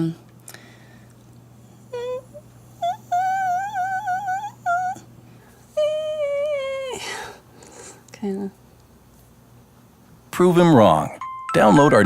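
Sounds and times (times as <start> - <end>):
breathy exhale: 0.5 - 1.1
woman whimpering imitating snore: 1.9 - 5.0.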